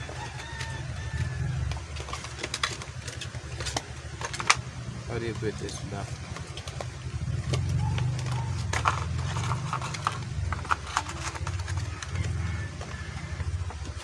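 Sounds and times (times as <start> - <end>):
packaging being handled: 0.0 - 14.0
steady low hum: 0.0 - 14.0
plastic puzzle clicking and tapping: 5.3 - 14.0.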